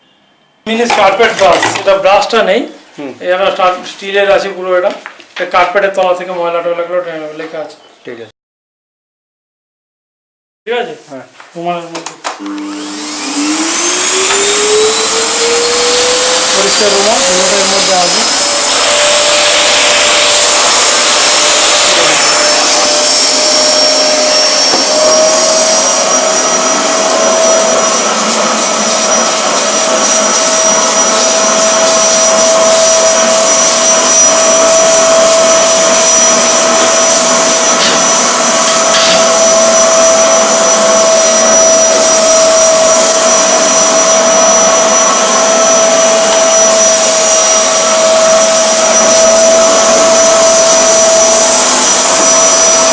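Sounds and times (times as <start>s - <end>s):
vacuum cleaner motor whine: 12.2s - 52.9s.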